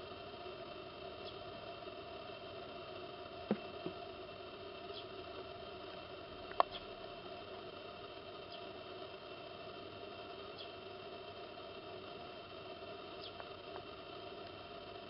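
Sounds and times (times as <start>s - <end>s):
faint background hum: 0.0s - 15.0s
faint bird chirps: 1.2s - 1.4s, 4.9s - 5.2s, 8.4s - 8.7s, 10.5s - 10.8s, 13.1s - 13.4s
small ticks: 1.2s - 1.5s, 4.8s - 5.2s, 5.9s - 7.0s, 10.4s - 10.8s, 13.1s - 13.9s.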